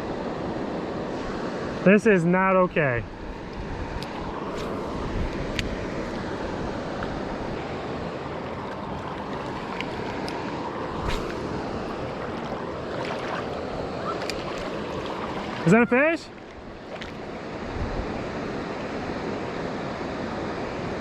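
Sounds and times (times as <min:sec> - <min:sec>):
wind on microphone: 0:03.0 - 0:07.6, 0:10.8 - 0:15.7, 0:17.6 - 0:18.7
river water rushing: 0:03.2 - 0:21.0.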